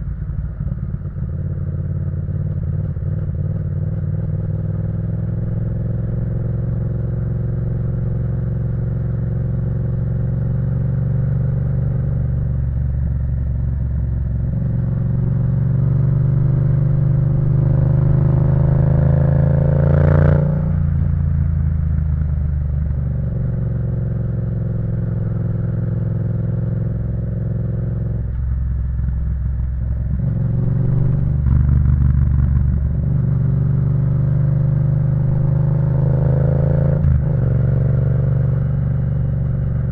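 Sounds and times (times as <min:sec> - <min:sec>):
motorcycle engine revving: 0:29.0 - 0:39.9.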